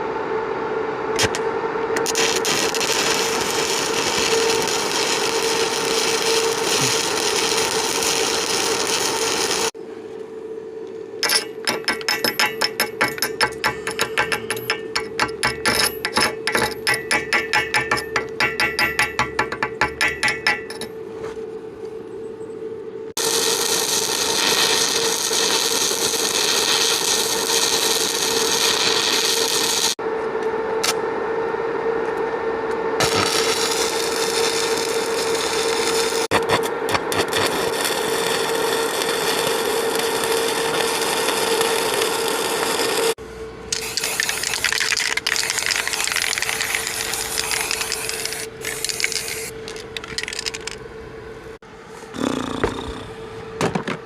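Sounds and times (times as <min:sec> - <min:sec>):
steady hum: 0:00.0 - 0:54.0
metalworking tool hissing: 0:02.4 - 0:09.8, 0:12.1 - 0:20.5, 0:45.5 - 0:49.6.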